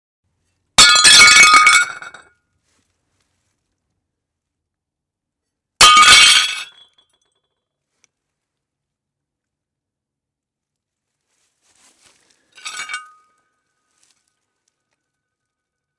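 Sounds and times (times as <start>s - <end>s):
ceramic plates smashing: 0.8s - 2.2s, 5.8s - 6.8s.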